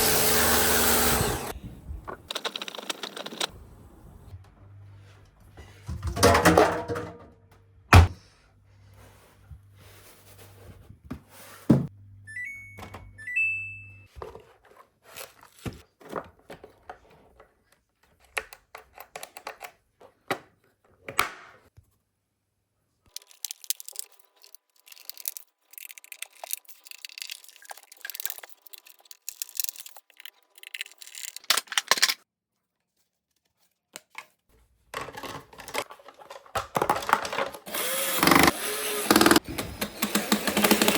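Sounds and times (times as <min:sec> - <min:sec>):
plastic parts thunks and clicks: 0:02.0 - 0:03.5, 0:34.9 - 0:37.7.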